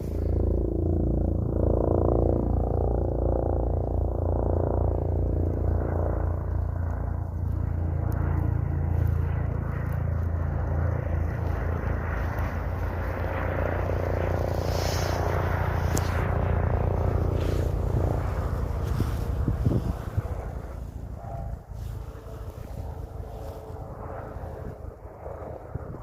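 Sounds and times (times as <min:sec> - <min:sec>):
helicopter rotor running: 0:00.0 - 0:26.0.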